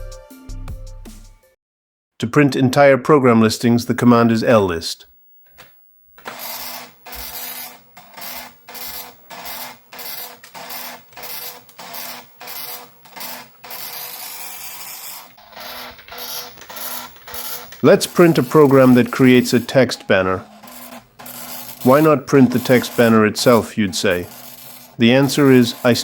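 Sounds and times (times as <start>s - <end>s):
dot matrix printer chatter: 6.2s - 26.0s.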